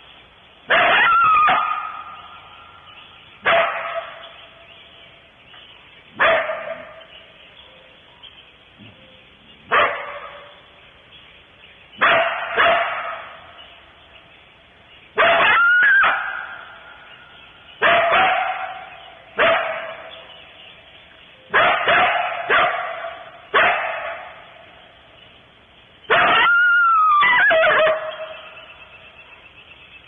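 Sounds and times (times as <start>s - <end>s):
coyote barking: 0.7s - 4.6s, 6.2s - 7.9s, 12.0s - 13.6s, 15.1s - 20.6s, 21.4s - 24.7s, 26.1s - 29.7s.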